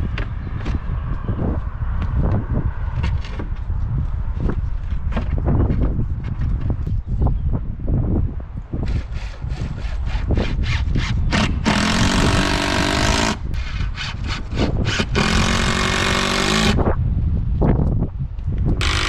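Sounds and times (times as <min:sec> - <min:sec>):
power tool motor bursts: 0:10.6 - 0:16.9.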